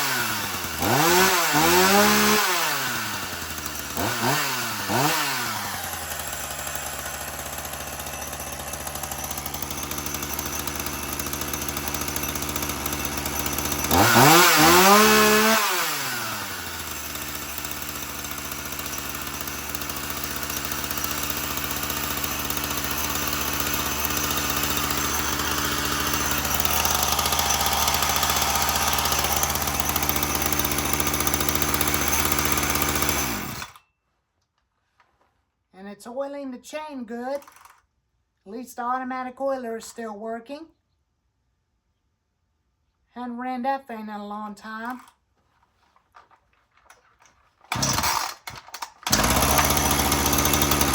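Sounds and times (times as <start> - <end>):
chainsaw idling and revving: 0.0 - 33.8, 47.6 - 50.9.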